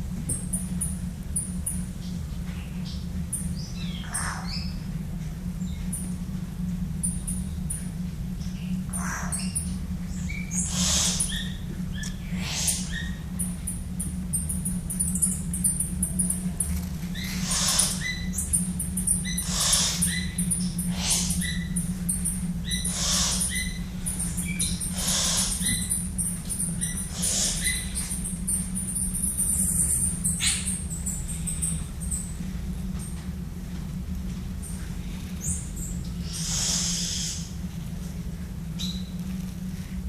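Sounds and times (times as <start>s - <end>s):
steady low hum: 0.0s - 40.0s
loud noisy bird call: 3.8s - 4.8s, 8.7s - 13.6s, 17.1s - 32.3s, 35.4s - 37.6s.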